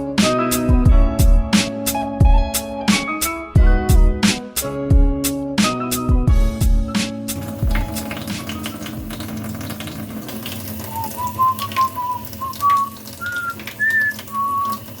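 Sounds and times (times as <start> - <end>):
person whistling a tune: 10.8 - 15.0.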